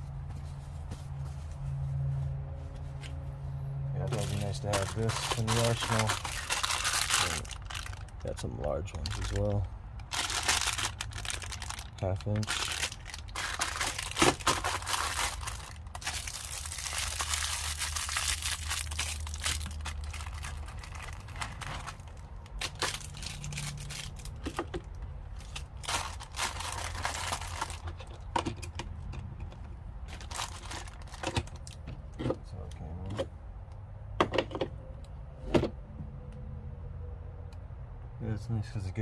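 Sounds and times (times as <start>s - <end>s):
plastic packaging crinkling: 4.0s - 24.7s, 25.4s - 28.0s, 30.1s - 31.8s
tools clicking and knocking: 27.8s - 29.8s.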